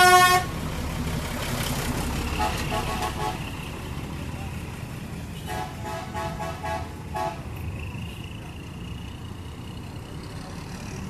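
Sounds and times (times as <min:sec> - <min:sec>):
bus melody horn: 0:00.0 - 0:00.5, 0:02.4 - 0:03.5, 0:05.4 - 0:07.5
bus engine rumble: 0:00.0 - 0:11.0
traffic: 0:00.0 - 0:11.0.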